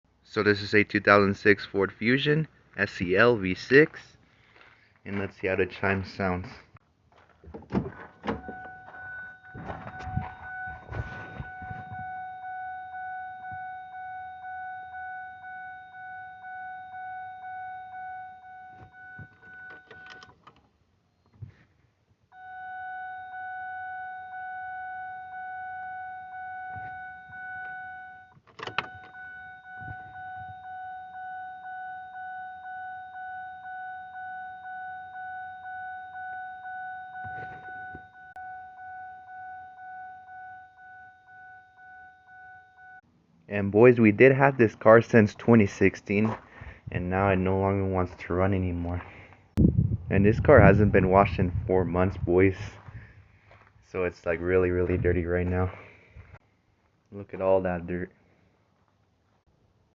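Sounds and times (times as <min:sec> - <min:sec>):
car warning chime: 0:08.2 - 0:20.3, 0:22.3 - 0:43.0.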